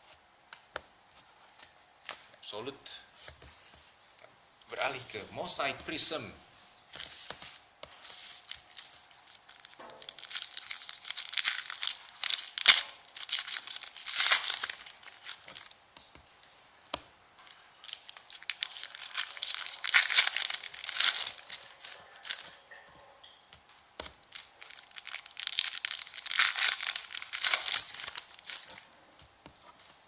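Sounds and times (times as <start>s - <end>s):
plastic and foil packaging rustling: 6.9s - 15.9s, 17.4s - 22.8s, 24.1s - 28.9s
packaging clicks and snaps: 17.8s - 22.6s, 24.0s - 28.8s.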